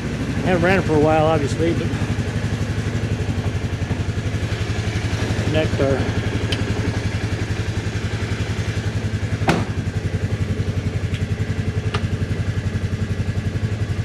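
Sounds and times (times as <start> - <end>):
engine idling: 0.0 - 14.0
sharp knock: 9.4 - 9.8.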